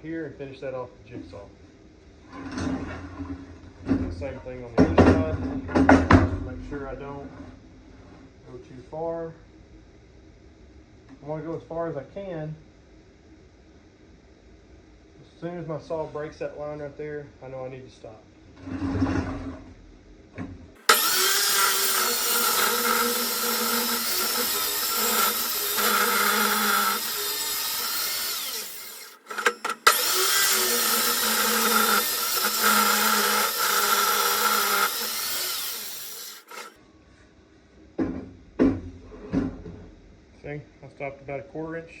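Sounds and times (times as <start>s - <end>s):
circular saw cutting wood: 20.8s - 36.8s.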